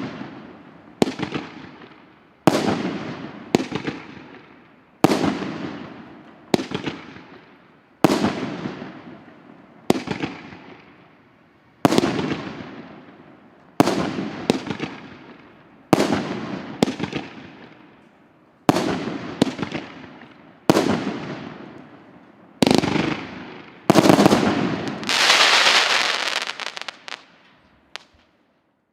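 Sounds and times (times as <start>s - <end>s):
firework bangs: 18.7s - 21.7s, 22.6s - 28.2s
firework crackling burst: 23.9s - 28.2s.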